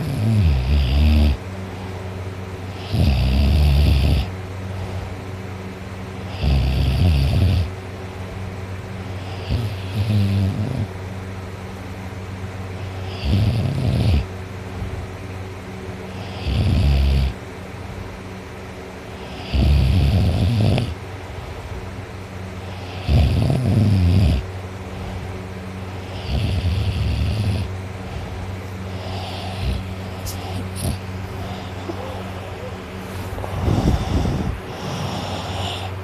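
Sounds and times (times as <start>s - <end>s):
boy snoring loudly: 0.0s - 1.4s, 2.8s - 4.3s, 6.3s - 7.7s, 9.2s - 10.9s, 12.9s - 14.3s, 16.2s - 17.4s, 19.3s - 21.0s, 22.7s - 24.4s, 26.1s - 27.7s, 28.9s - 32.8s, 33.5s - 36.0s
steady low hum: 0.0s - 36.0s.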